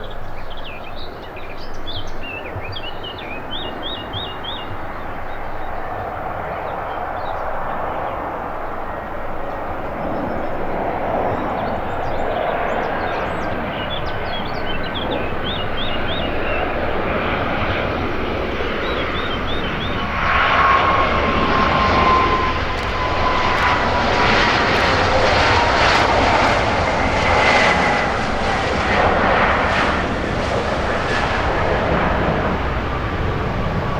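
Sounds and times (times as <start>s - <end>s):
airliner approaching: 0.0s - 33.9s
high engine whine: 7.6s - 33.9s.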